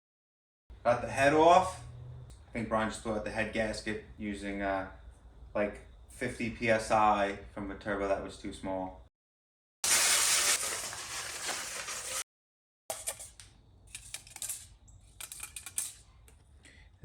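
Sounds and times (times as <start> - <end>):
loud even hiss: 9.8 - 12.2
metal tools clinking: 13.9 - 16.1.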